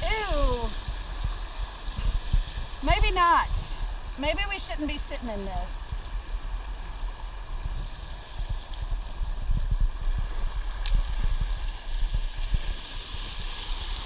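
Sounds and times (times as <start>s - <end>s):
river water gurgling and sloshing: 0.0s - 14.0s
low rumbling thumps on microphone: 0.8s - 3.1s, 5.8s - 12.8s.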